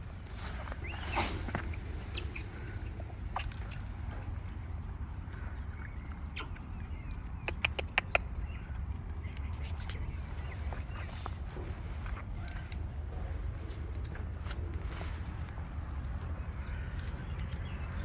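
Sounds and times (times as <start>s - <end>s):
steady low rumble: 0.0s - 18.0s
animal chirps or squeaks: 3.3s - 3.6s, 7.4s - 8.2s
sharp clicks: 7.4s - 8.2s.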